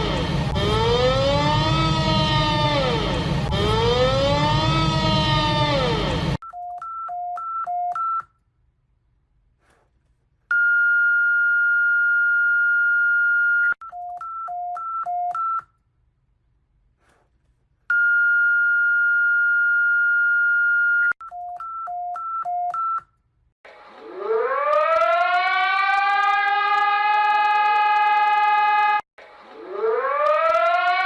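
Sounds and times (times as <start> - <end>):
wailing siren: 0.0 - 6.4, 24.0 - 31.0.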